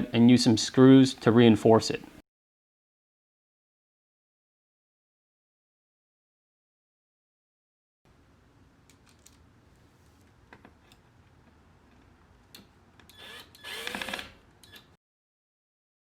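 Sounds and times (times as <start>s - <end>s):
power drill driving a screw: 13.1s - 14.9s.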